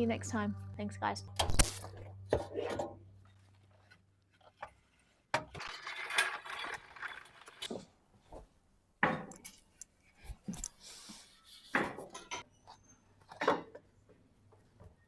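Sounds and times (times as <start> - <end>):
metal objects clanking: 1.3 - 3.4.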